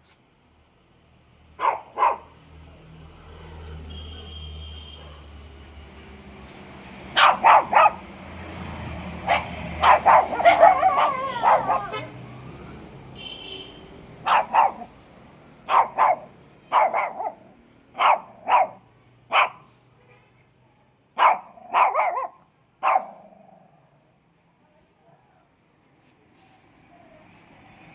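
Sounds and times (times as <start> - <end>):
dog barking: 1.6 - 2.4, 4.9 - 5.4, 7.1 - 8.2, 9.1 - 12.3, 14.2 - 15.0, 15.6 - 19.7, 21.2 - 23.6.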